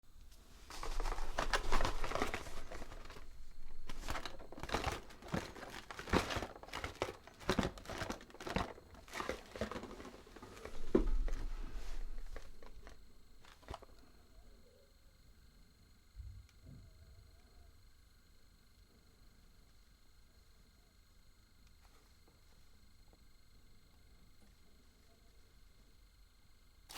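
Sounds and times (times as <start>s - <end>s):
foil wrapper crinkling: 0.5s - 14.0s.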